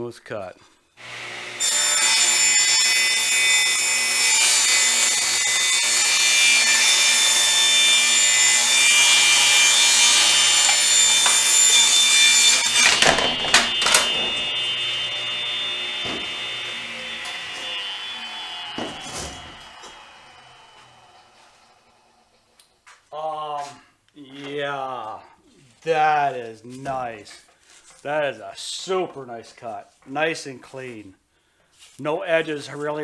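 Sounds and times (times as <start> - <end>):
table saw cutting wood: 1.0 - 22.5
sharp knocks: 10.6 - 14.6, 16.0 - 16.4.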